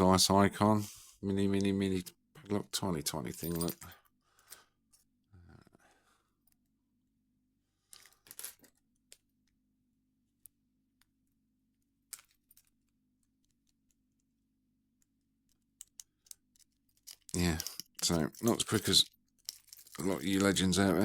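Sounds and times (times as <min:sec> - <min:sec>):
lock picking clicks and rattles: 0:15.4 - 0:20.6.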